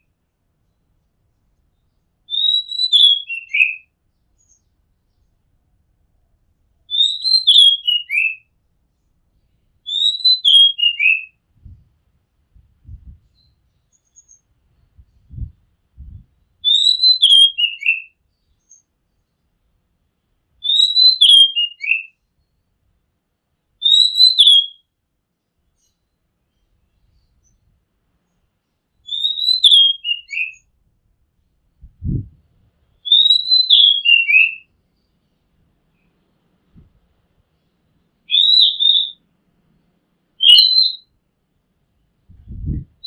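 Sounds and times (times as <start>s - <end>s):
bird singing whistled phrases: 2.3s - 3.8s, 6.9s - 8.4s, 9.9s - 11.3s, 16.6s - 18.1s, 20.6s - 22.1s, 23.8s - 24.8s, 29.0s - 30.6s, 33.0s - 34.6s, 38.3s - 39.2s, 40.4s - 41.1s.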